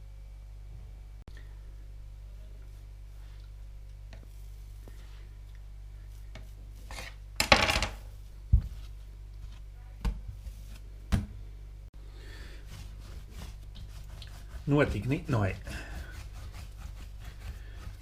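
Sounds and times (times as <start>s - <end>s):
low steady hum: 0.0s - 18.0s
dough handling scuffle: 8.0s - 11.3s, 12.4s - 18.0s
dough thump and knocks: 11.1s - 11.4s.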